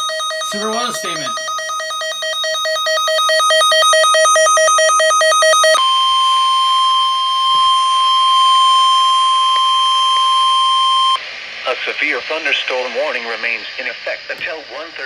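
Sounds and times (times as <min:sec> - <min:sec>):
rapidly pulsing buzzer beep: 0:00.1 - 0:02.7
long steady pure tone: 0:00.4 - 0:01.7, 0:05.8 - 0:12.6.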